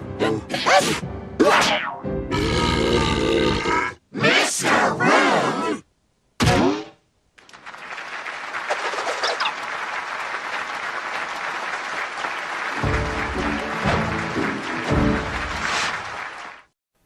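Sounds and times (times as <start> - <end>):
audience applause: 7.4 - 16.7.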